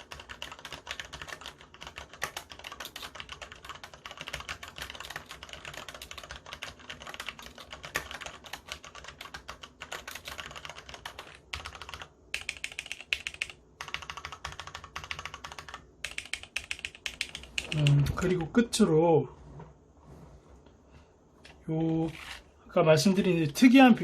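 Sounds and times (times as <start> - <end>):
mechanical keyboard typing: 0.0 - 18.5.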